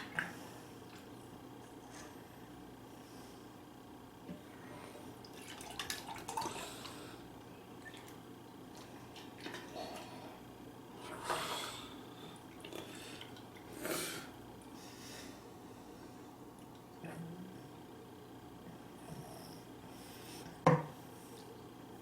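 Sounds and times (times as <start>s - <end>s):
wet eating and drinking sounds: 4.4s - 14.8s, 16.3s - 18.8s.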